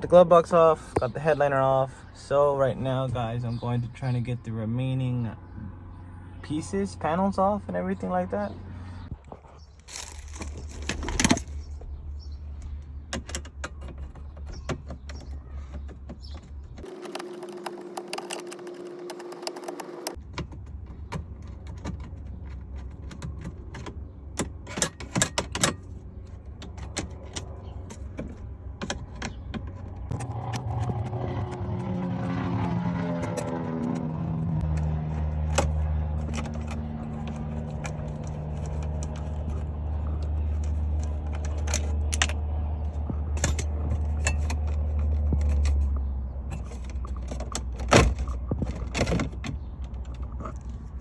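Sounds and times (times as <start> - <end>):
plastic trim panels clicking and rattling: 13.0 - 31.6.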